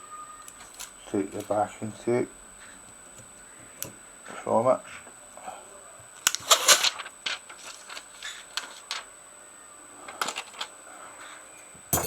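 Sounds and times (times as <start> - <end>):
plastic film peeling crackle: 6.2 - 9.1.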